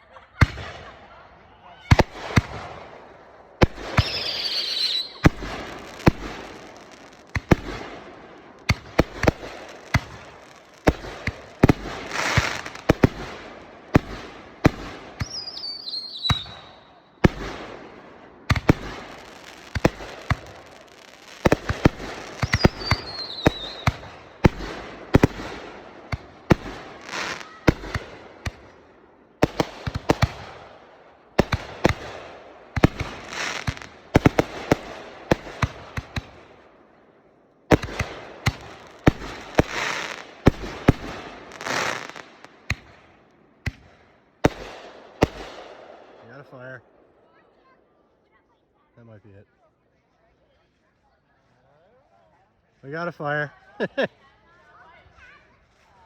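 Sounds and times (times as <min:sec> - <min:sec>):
fireworks crackling and hissing: 0:00.0 - 0:46.8, 0:49.0 - 0:56.0
fireworks bangs: 0:00.1 - 0:36.8, 0:37.7 - 0:46.5
falling firework whistles: 0:03.9 - 0:05.4, 0:15.2 - 0:17.1, 0:22.3 - 0:24.1.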